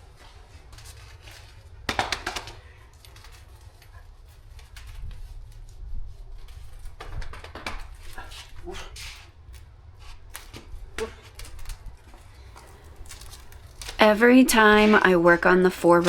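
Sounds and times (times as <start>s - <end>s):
steady low hum: 0.0s - 16.0s
packaging clicks and rustles: 6.4s - 15.2s.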